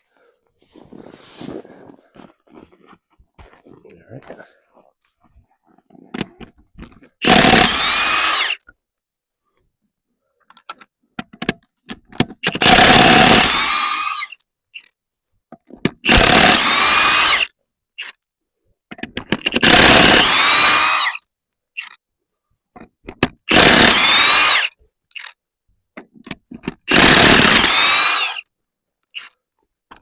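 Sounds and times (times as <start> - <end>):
impact wrench bursts: 7.2 - 8.6, 12.4 - 14.4, 16.0 - 17.5, 19.4 - 21.2, 23.4 - 25.4, 26.8 - 28.4
small clicks: 14.3 - 15.0, 21.8 - 22.0, 25.1 - 25.4, 29.0 - 30.0.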